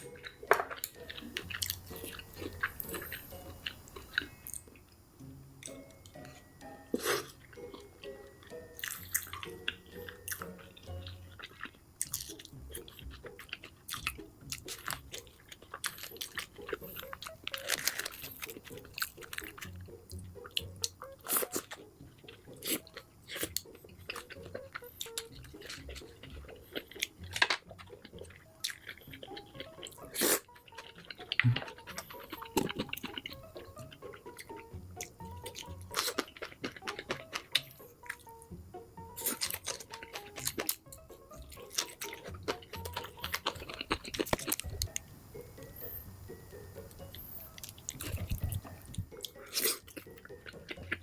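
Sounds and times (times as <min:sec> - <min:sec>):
person chewing food: 0:00.0 - 0:51.0.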